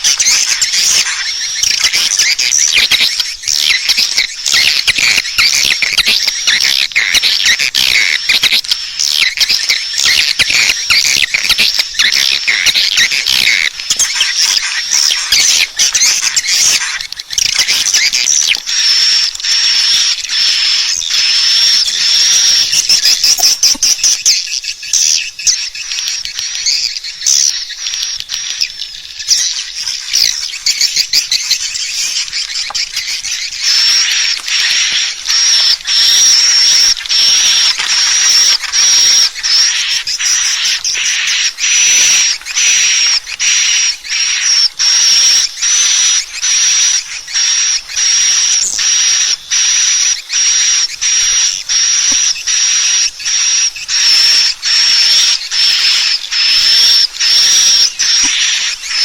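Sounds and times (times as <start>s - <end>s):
dense chirring call with whistle: 0.0s - 59.0s
swiftlets twittering: 0.0s - 59.0s.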